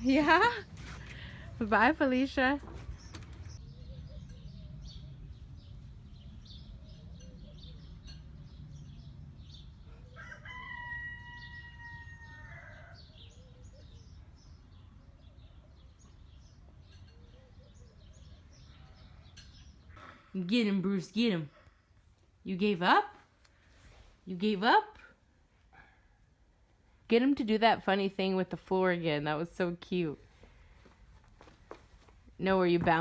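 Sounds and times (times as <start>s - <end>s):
small birds chirping: 0.0s - 10.4s, 12.4s - 20.3s
rooster crowing: 10.1s - 13.2s.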